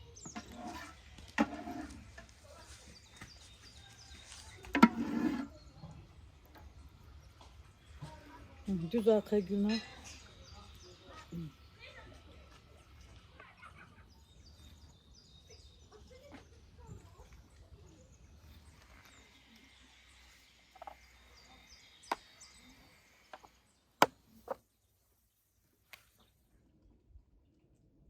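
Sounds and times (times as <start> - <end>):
birds chirping: 17.1 - 25.0.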